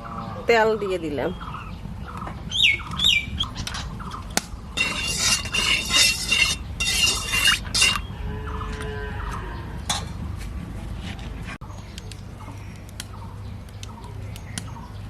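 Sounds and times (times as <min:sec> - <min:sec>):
bird chirps: 0:01.3 - 0:04.3.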